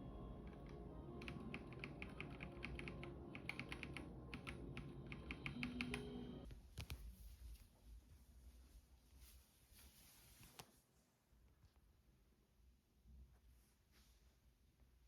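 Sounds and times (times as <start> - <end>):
soft background music: 0.0 - 6.5
keyboard typing clicks: 0.4 - 6.9.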